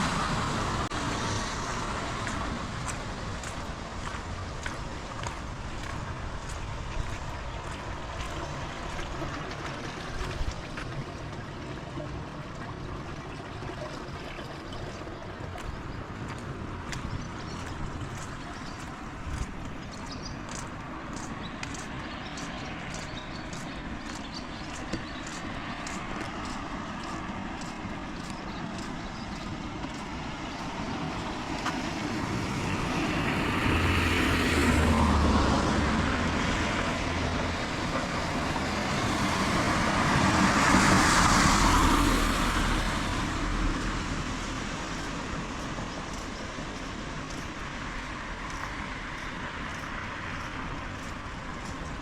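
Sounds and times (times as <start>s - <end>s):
steady rain: 0.0s - 8.6s
vehicles passing on wet road: 0.0s - 52.0s.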